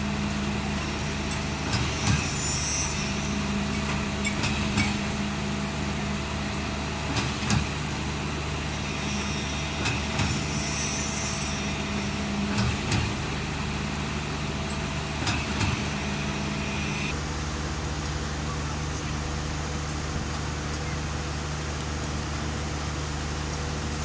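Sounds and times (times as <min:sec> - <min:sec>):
concrete mixer truck engine running: 0:00.0 - 0:24.0.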